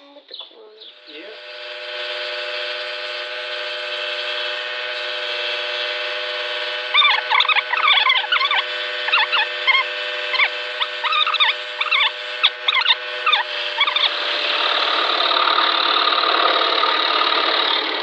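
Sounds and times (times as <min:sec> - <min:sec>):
scroll saw humming: 0:00.8 - 0:18.0
saw blade squealing: 0:06.9 - 0:14.2.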